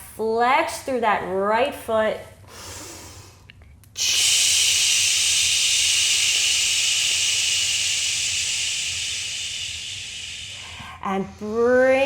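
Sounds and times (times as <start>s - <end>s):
hissing breath through mouth: 4.0s - 11.0s.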